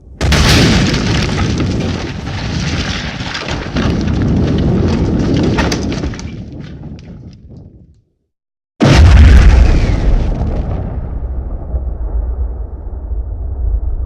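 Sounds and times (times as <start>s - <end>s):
deep rumbling explosion: 0.0s - 7.9s, 8.8s - 14.0s
debris crackling: 0.0s - 8.0s.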